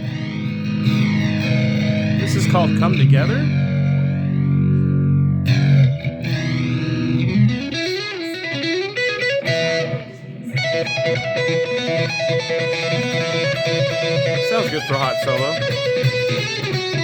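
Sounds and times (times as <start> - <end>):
electric guitar: 0.0 - 17.0.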